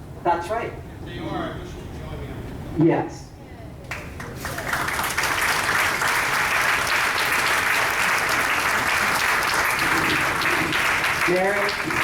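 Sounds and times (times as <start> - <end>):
crowd applauding: 3.9 - 12.0.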